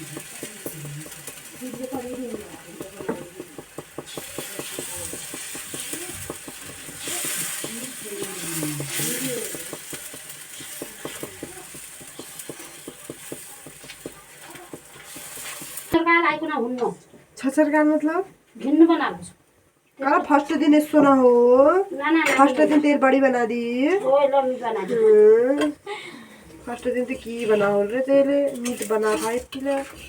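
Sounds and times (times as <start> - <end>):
food sizzling in oil: 0.0 - 16.0
utensil scraping a pan: 0.0 - 16.0, 26.6 - 30.0.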